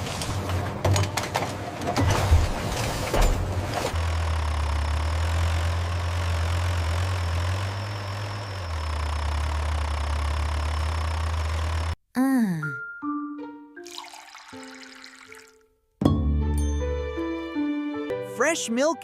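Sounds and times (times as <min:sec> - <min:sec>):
engine droning: 0:03.4 - 0:12.0.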